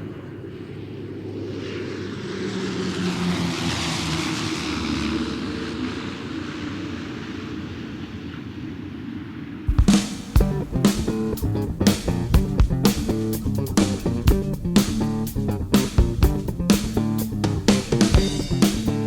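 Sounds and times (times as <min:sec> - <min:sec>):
engine passing by: 0:00.0 - 0:08.7, 0:09.7 - 0:19.0.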